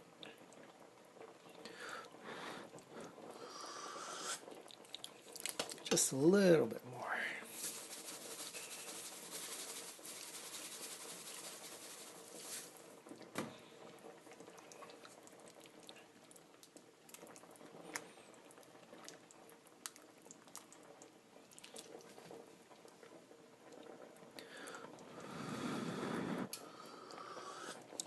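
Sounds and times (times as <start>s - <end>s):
pot simmering and bubbling: 0.0s - 28.0s.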